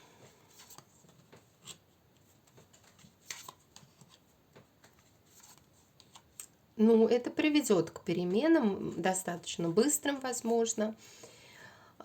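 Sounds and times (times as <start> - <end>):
cards tapping and rustling: 0.5 - 6.5.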